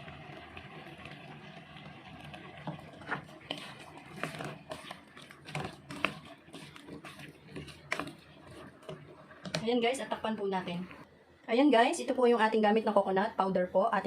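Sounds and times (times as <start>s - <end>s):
low simmering hiss: 0.0s - 14.0s
utensil scraping a pan: 1.8s - 11.0s.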